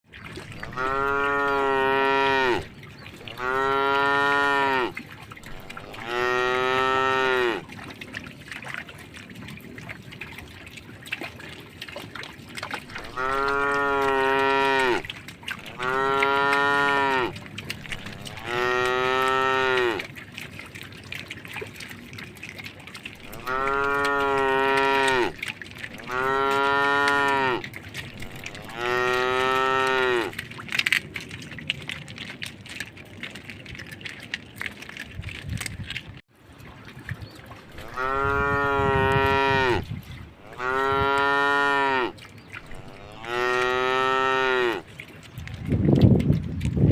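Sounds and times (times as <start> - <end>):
cow mooing: 0.6 - 7.6, 12.9 - 15.0, 15.6 - 20.1, 23.2 - 30.4, 37.8 - 39.8, 40.4 - 44.8.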